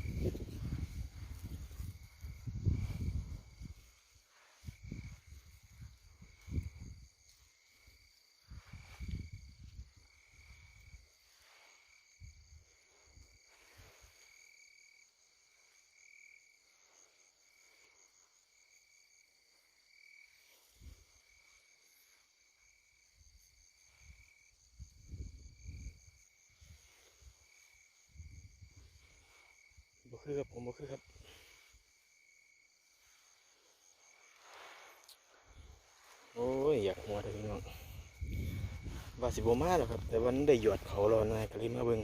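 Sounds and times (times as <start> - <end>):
wind buffeting microphone: 0.0 - 3.9, 4.6 - 7.1, 8.5 - 11.0, 24.8 - 26.2, 37.0 - 42.0
night insects chirping: 0.0 - 42.0.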